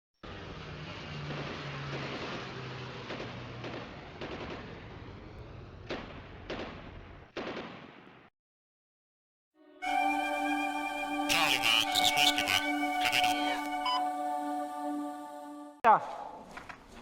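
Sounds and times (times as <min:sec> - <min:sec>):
airsoft guns firing: 0:05.9 - 0:08.0.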